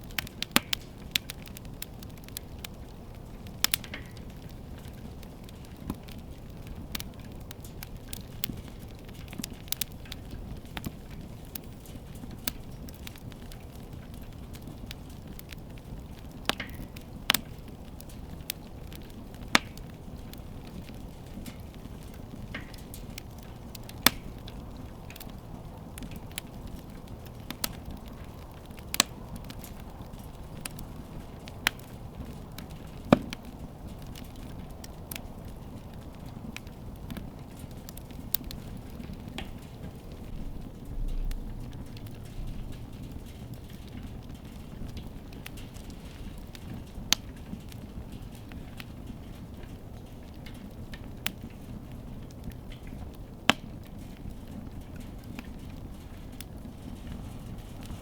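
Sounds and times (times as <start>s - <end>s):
low rumble of burning fire: 0.0s - 58.0s
wood fire crackling: 0.0s - 58.0s.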